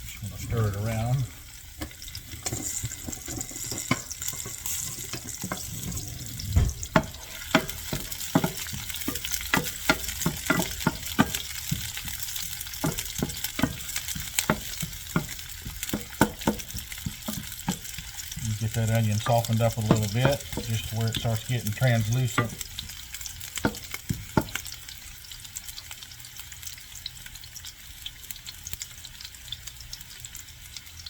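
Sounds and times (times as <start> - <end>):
onion sizzling in oil: 0.0 - 31.0
utensil scraping pan: 1.8 - 24.6.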